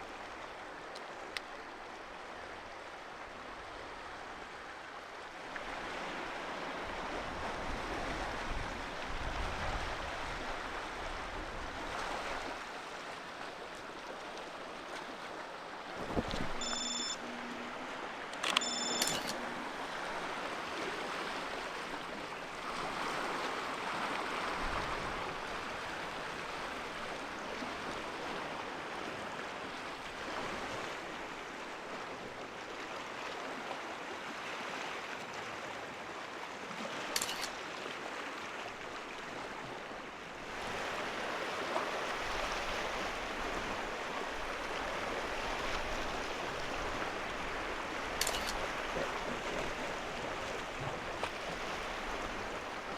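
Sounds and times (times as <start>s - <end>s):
sea surf rushing: 15.8s - 31.3s
short click: 18.3s - 19.4s.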